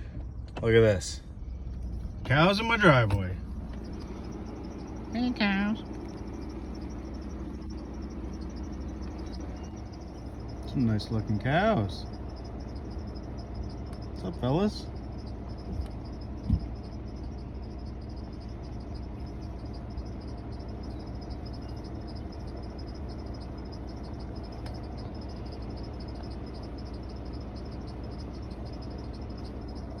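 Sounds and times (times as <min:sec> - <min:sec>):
insects chirring: 0:00.0 - 0:30.0
low rumble: 0:00.0 - 0:30.0
low thump: 0:15.7 - 0:16.8.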